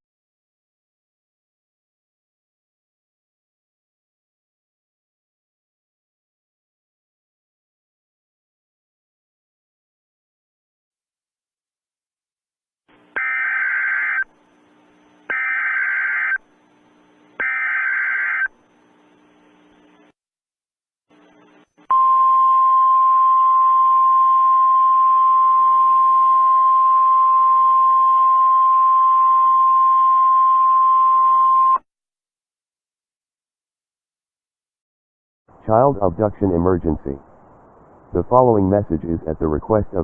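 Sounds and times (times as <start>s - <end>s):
data-modem screech bursts: 13.2s - 14.3s, 15.3s - 16.4s, 17.4s - 18.5s
faint radio hiss: 18.0s - 20.1s, 21.1s - 21.9s, 35.6s - 40.0s.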